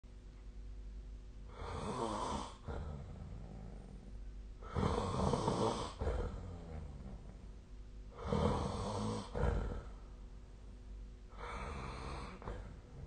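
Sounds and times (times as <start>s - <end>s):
steady low hum: 0.1s - 13.0s
person snoring: 1.5s - 7.4s, 8.1s - 10.0s, 11.3s - 13.0s.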